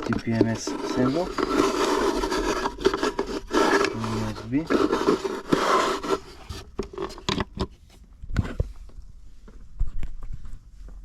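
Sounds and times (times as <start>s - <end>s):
rubbing and scraping: 0.0s - 8.7s.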